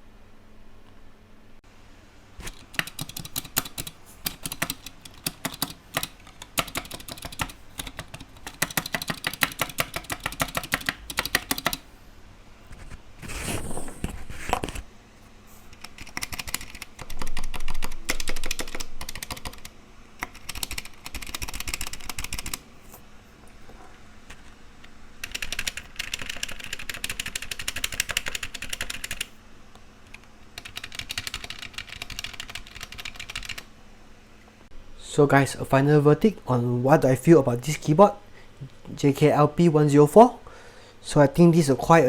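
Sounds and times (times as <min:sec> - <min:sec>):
soft mechanical keyboard typing: 0:02.5 - 0:11.8, 0:15.7 - 0:22.6, 0:25.2 - 0:29.4, 0:30.1 - 0:33.7.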